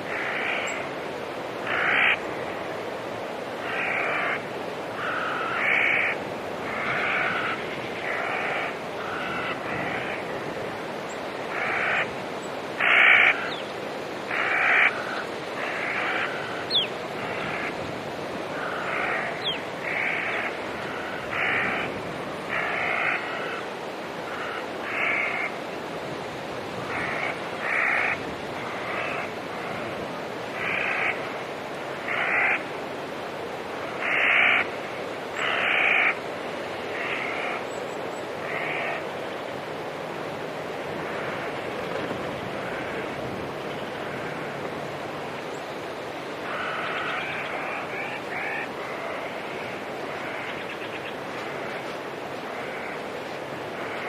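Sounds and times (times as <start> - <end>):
crows cawing: 0.0 - 0.9, 1.6 - 2.3, 3.6 - 10.5, 11.5 - 12.2, 12.8 - 13.6, 14.2 - 17.8, 18.4 - 25.6, 26.9 - 31.3, 31.9 - 32.7, 33.8 - 36.2, 36.9 - 37.7, 38.4 - 39.1, 42.5 - 43.2, 44.0 - 44.6, 46.4 - 50.7, 51.3 - 54.0.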